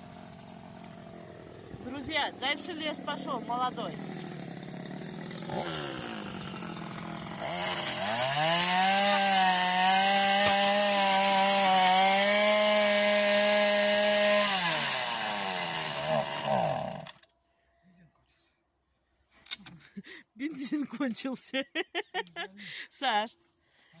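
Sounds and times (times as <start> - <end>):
string trimmer engine revving: 0.0 - 17.2.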